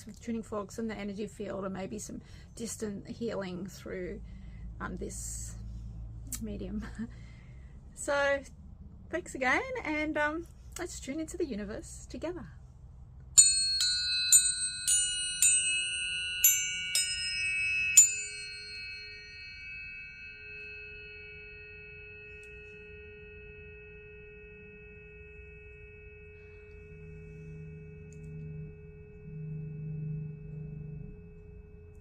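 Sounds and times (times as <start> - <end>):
low steady tone: 0.0 - 32.0
tuning forks ringing: 13.4 - 32.0.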